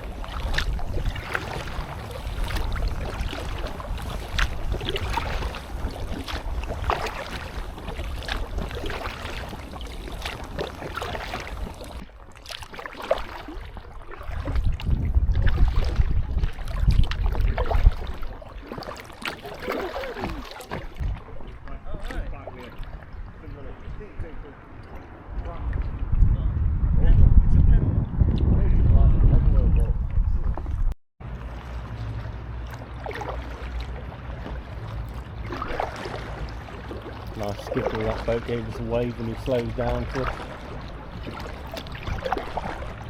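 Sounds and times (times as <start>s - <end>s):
wind rumble on microphone: 0.0s - 12.1s, 13.4s - 18.7s, 19.9s - 43.0s
kayak paddles splashing in water: 0.0s - 26.0s, 30.2s - 43.0s.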